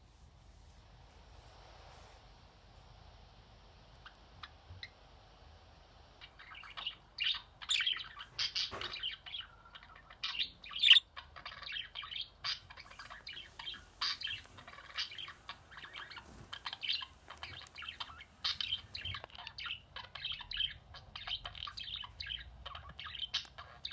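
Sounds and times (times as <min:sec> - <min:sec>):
budgerigars chirping: 0:06.2 - 0:23.9.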